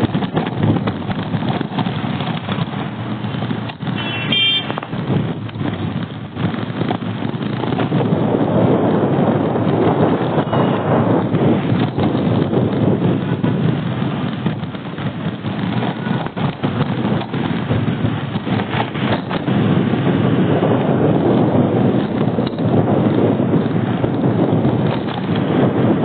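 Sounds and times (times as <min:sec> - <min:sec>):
traffic rushing: 0:00.0 - 0:26.0
wind buffeting microphone: 0:00.0 - 0:26.0.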